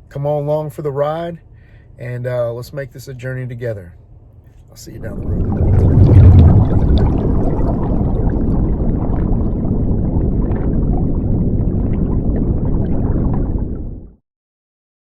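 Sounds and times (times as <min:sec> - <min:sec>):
loud low rumbling: 0:04.7 - 0:14.2.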